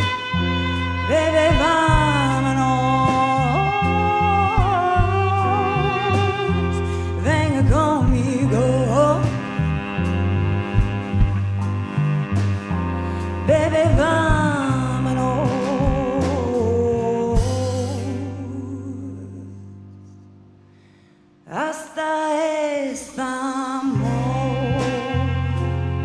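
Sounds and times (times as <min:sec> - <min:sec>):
person singing with vibrato: 0:00.0 - 0:12.0, 0:12.6 - 0:20.1, 0:21.4 - 0:26.0
band playing bass drums and guitar: 0:00.0 - 0:18.4, 0:23.9 - 0:26.0.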